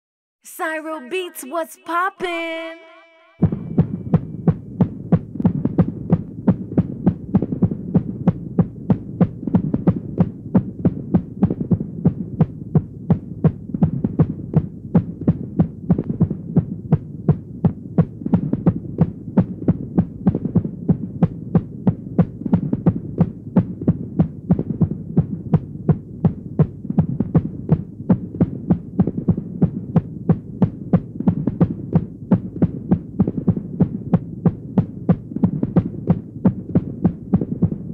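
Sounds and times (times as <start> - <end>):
low throbbing hum: 2.4 - 37.9
irregular heartbeat: 3.4 - 37.9.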